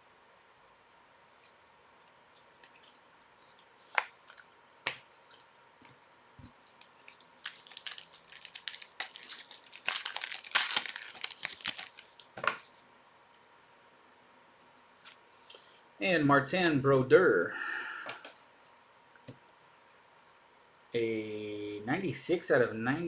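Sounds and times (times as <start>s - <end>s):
plastic packaging crinkling and tearing: 6.5s - 12.8s.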